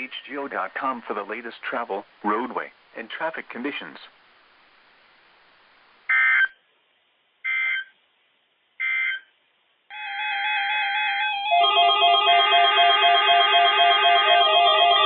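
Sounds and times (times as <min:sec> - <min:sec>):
electronic background music: 0:11.6 - 0:15.0.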